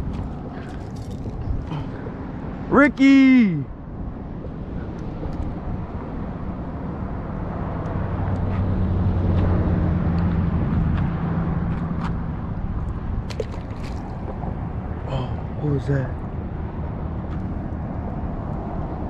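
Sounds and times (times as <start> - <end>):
outdoor noise: 0.0 - 19.0.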